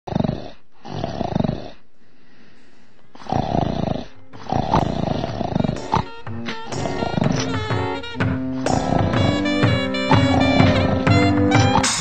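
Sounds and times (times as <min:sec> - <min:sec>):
snoring: 0:00.1 - 0:01.8, 0:03.1 - 0:06.0
music: 0:04.0 - 0:12.0.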